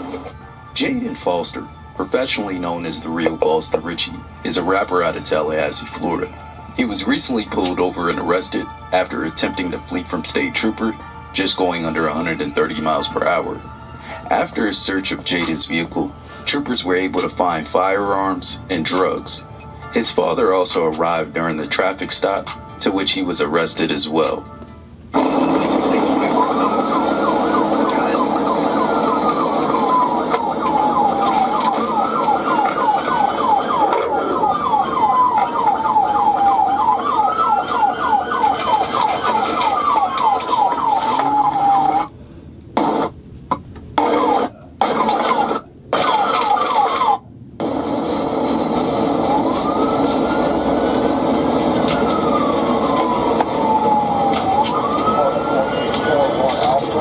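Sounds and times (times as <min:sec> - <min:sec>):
road noise: 0:00.0 - 0:57.0
police siren wailing and yelping: 0:25.1 - 0:42.2, 0:44.0 - 0:57.0.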